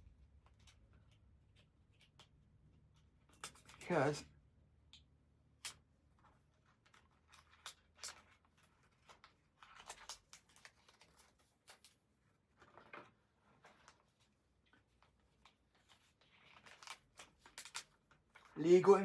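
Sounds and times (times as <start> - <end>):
paper and cardboard rustling: 6.3 - 19.0.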